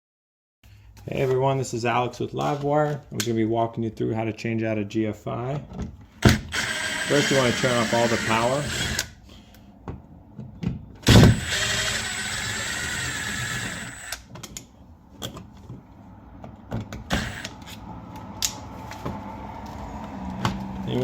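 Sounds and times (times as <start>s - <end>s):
power drill running: 6.4s - 9.2s, 11.1s - 14.3s, 17.1s - 17.6s.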